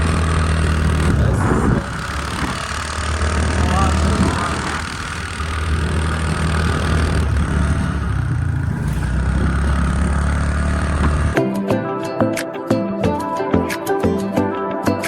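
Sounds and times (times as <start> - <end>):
scooter engine running: 0.0 - 11.5.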